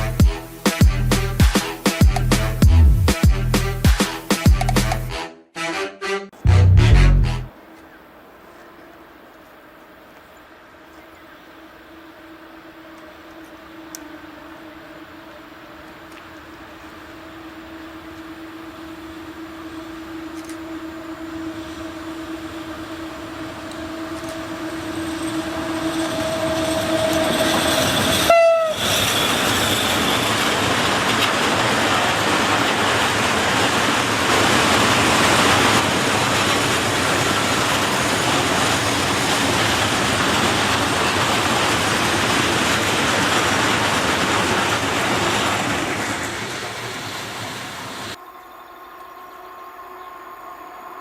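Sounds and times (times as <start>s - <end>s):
locomotive horn blast: 0.0s - 7.5s, 19.3s - 28.9s
train wagons rumbling on rails: 22.6s - 48.2s.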